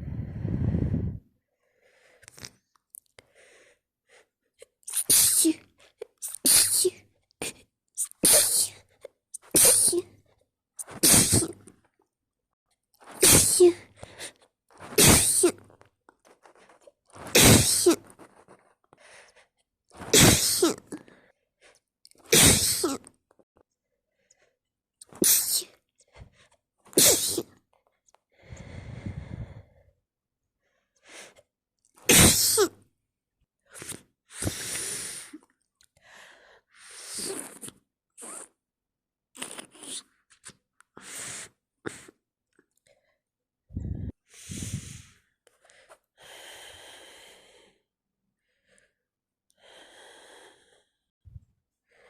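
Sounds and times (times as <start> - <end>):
person sneezing: 4.9 - 8.8, 9.4 - 10.2, 10.8 - 11.7, 13.0 - 13.9, 14.8 - 15.7, 17.2 - 18.3, 20.0 - 21.0, 22.3 - 23.1, 25.1 - 25.7, 27.0 - 27.5, 32.1 - 32.8.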